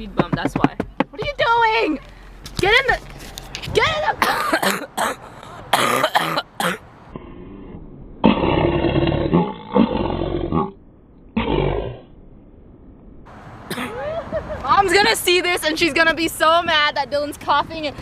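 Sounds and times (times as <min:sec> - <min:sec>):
person coughing: 0:04.2 - 0:06.8, 0:13.7 - 0:14.0.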